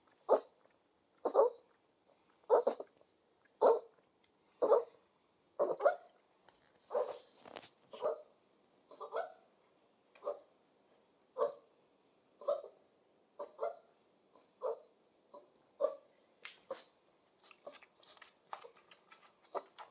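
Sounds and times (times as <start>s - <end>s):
puppy barking: 0.3s - 0.6s, 1.2s - 1.7s, 2.5s - 2.9s, 3.6s - 4.0s, 4.6s - 5.0s, 5.6s - 6.2s, 6.9s - 7.3s, 7.9s - 8.3s, 8.9s - 9.5s, 10.2s - 10.6s, 11.4s - 11.7s, 12.4s - 12.8s, 13.4s - 16.1s.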